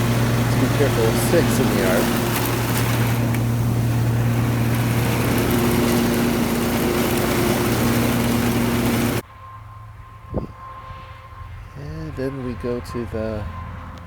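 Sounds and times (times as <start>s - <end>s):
riding lawn mower engine: 0.0s - 9.2s.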